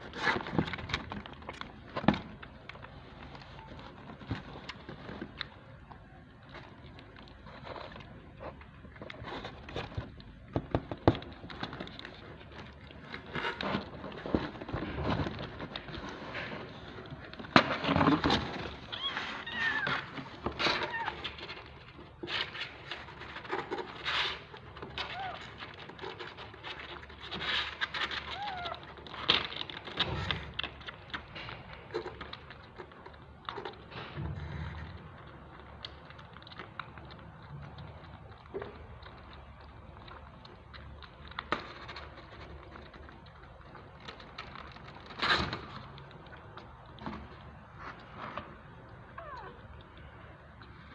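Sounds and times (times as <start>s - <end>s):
kittens suckling: 0.0s - 50.9s
rustling: 0.0s - 50.9s
kittens mewing: 18.9s - 21.4s, 28.2s - 28.9s, 49.1s - 49.8s.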